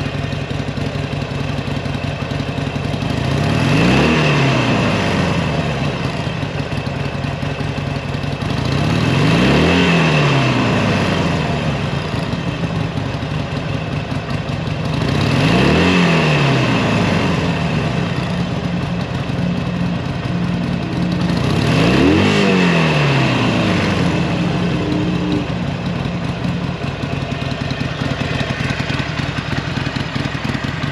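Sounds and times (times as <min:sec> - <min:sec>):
motorcycle engine idling and revving: 0:00.0 - 0:30.9.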